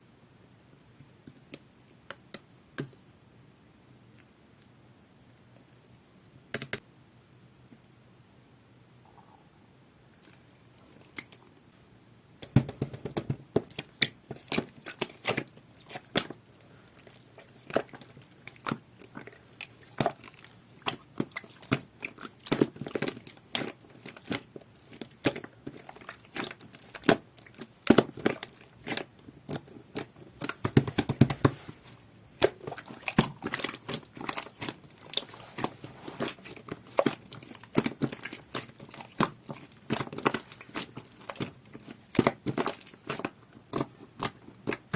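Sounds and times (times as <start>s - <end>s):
slime squished by hand: 12.4s - 44.9s.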